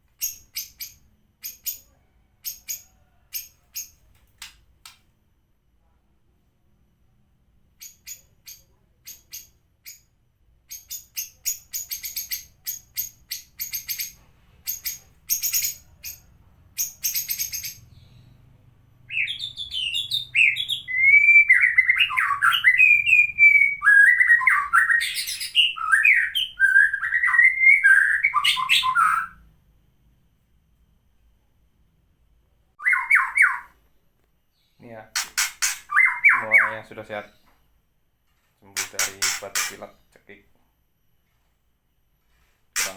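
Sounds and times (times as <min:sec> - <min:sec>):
bird chip calls: 0:19.1 - 0:29.3, 0:32.8 - 0:33.8, 0:35.2 - 0:37.2
bird whistled song: 0:19.1 - 0:29.4, 0:32.8 - 0:33.8, 0:35.6 - 0:36.9.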